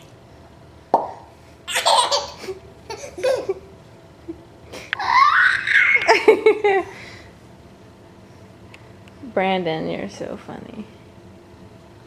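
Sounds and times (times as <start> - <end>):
mouth pop: 0.9 - 1.3
baby squealing laugh: 1.7 - 3.6, 5.0 - 6.3
baby giggling: 1.7 - 3.7, 5.0 - 6.6.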